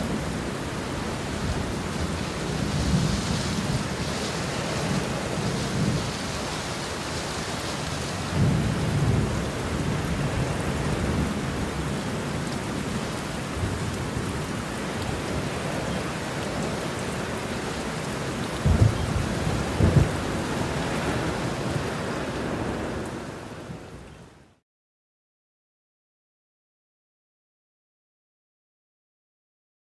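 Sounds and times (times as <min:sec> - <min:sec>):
thunder rumbling: 0:00.0 - 0:17.1, 0:17.8 - 0:23.0
steady rain falling: 0:00.0 - 0:24.6.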